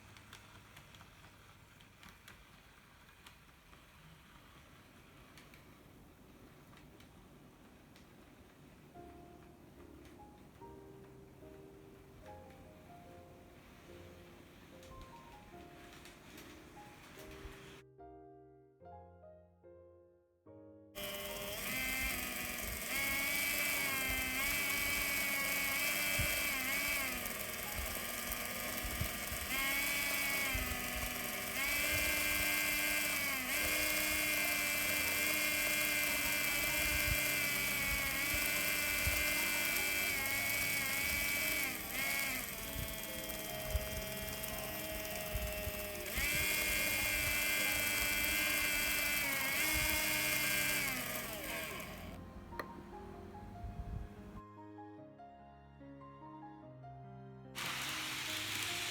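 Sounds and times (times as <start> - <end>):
model train motor whining: 21.0 - 52.2, 57.6 - 58.9.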